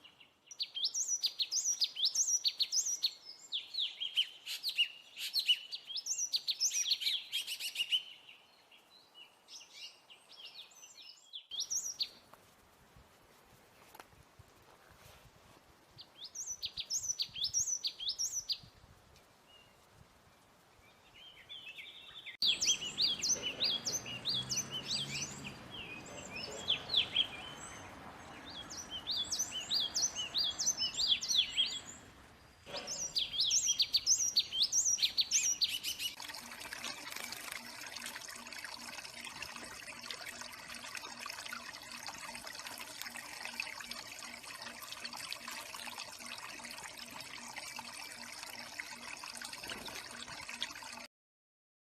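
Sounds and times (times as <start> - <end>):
bird song with sharp high notes: 21.0 - 36.2.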